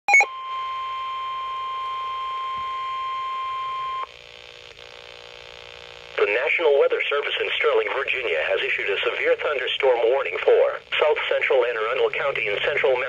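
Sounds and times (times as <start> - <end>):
faint radio hiss and hum: 2.3 - 13.0.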